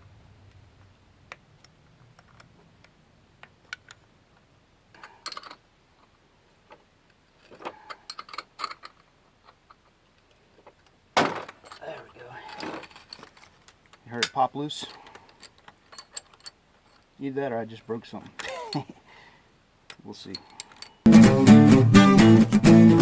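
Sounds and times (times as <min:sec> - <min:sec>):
plastic and metal parts clicking: 0:01.3 - 0:05.6.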